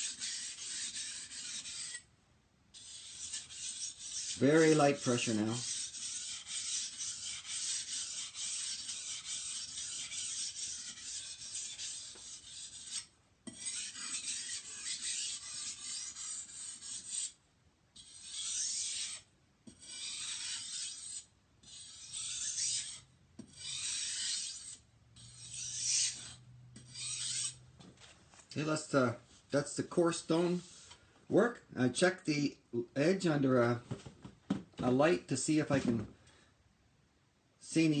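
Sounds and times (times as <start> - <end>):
knife scraping on whetstone: 0.0 - 2.1, 2.7 - 17.4, 18.0 - 27.6.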